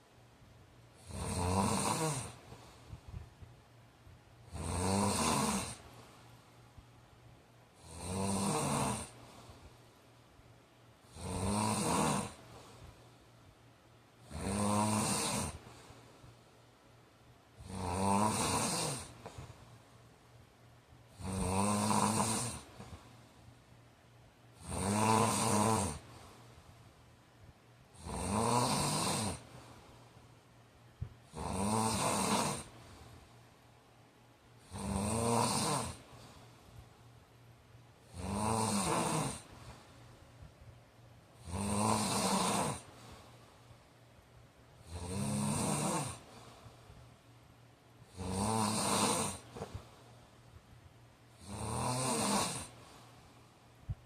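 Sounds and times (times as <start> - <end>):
man snoring: 1.0 - 2.6, 4.4 - 5.8, 7.8 - 9.2, 11.0 - 12.4, 14.2 - 15.6, 17.6 - 19.5, 21.1 - 23.0, 24.6 - 26.1, 28.0 - 29.5, 31.3 - 32.8, 34.6 - 36.3, 38.0 - 39.5, 41.4 - 42.9, 44.8 - 46.4, 48.1 - 49.8, 51.4 - 52.8.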